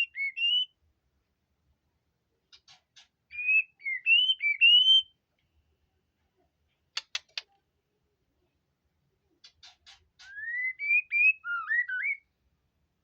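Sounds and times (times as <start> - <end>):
songbird singing: 0.0 - 0.8, 2.5 - 5.2, 7.0 - 7.6, 9.3 - 12.4.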